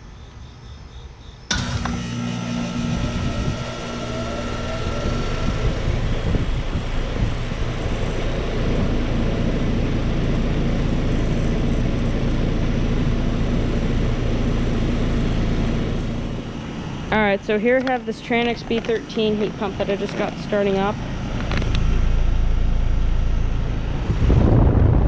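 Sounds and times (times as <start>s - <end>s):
compressor humming: 1.4s - 25.0s
condenser fan spinning up: 1.5s - 25.0s
rush of air: 23.8s - 25.0s.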